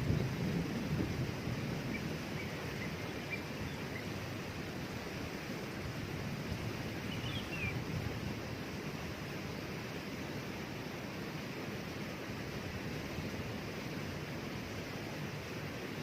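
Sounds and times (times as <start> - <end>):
waterfall rushing: 0.0 - 16.0
bird chirps: 7.1 - 7.8.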